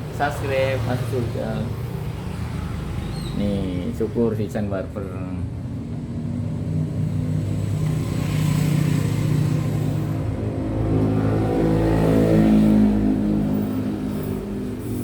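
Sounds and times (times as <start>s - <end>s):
vehicle engine revving: 5.6s - 15.0s.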